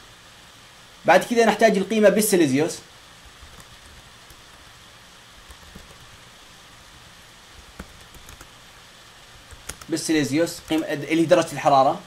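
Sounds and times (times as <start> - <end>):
faint hiss: 0.0 - 12.0
keyboard keys clicking: 5.5 - 6.1, 7.7 - 8.5, 9.5 - 9.9.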